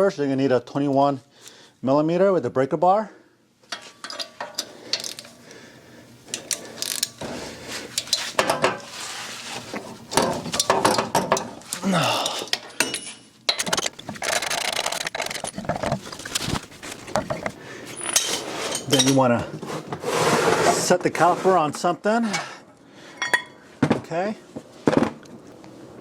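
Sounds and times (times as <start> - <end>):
metal tools clinking: 7.9 - 8.8, 10.1 - 19.3.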